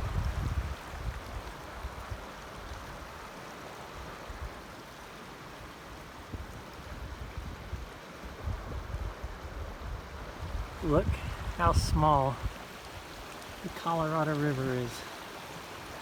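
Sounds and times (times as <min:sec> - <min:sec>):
wind buffeting microphone: 0:00.0 - 0:02.2, 0:06.3 - 0:13.5
stream water rushing: 0:00.0 - 0:16.0.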